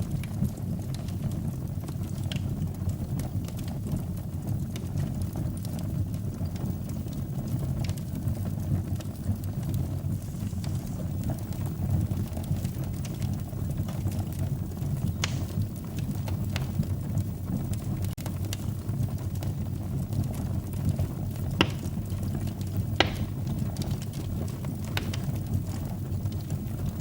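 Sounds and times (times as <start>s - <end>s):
fire burning in a fireplace: 0.0s - 27.0s
fire crackling and popping: 0.0s - 27.0s.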